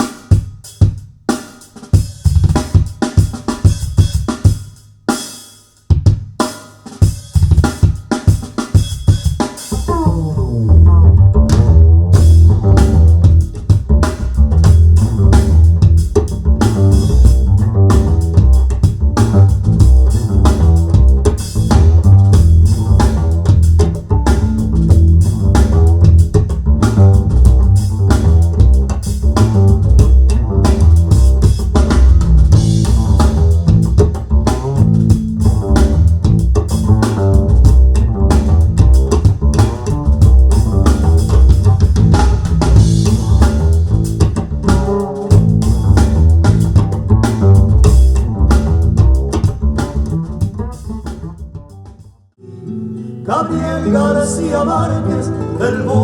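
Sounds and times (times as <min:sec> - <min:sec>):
drum kit: 0:00.0 - 0:52.2
bass line: 0:09.7 - 0:52.0
plucked guitar: 0:52.4 - 0:56.0.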